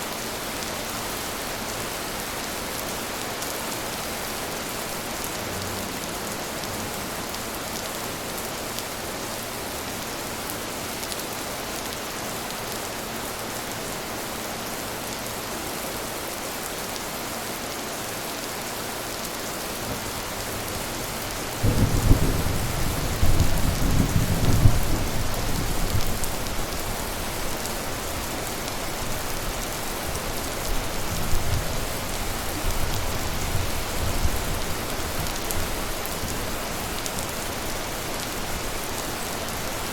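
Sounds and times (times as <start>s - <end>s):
steady rain falling: 0.0s - 39.9s
thunder rumbling: 21.5s - 26.4s.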